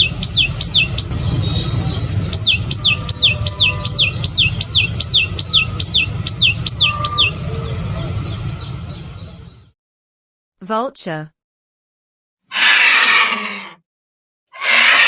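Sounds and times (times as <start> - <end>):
bird calling sharp descending notes: 0.0 - 9.7
low rumble: 0.0 - 9.7
steady high tone: 0.0 - 9.7.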